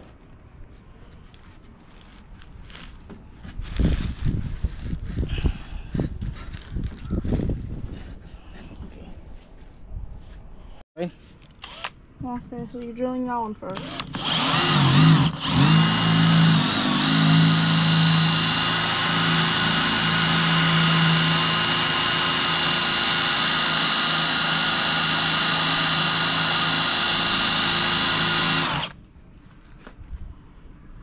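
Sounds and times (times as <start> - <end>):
electric drill running: 11.6 - 11.9, 13.7 - 29.0.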